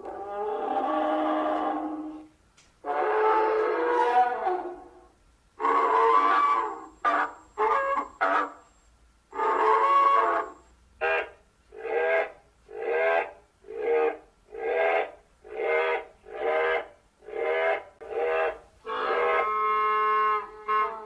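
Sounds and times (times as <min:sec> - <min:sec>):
creature honking calls: 0:02.8 - 0:05.0, 0:05.6 - 0:08.7, 0:09.3 - 0:21.0.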